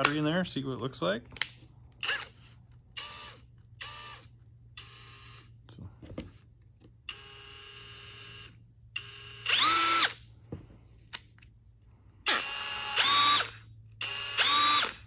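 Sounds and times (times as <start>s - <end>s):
cordless drill motor whining: 1.9s - 5.6s, 7.1s - 10.3s, 12.2s - 15.0s.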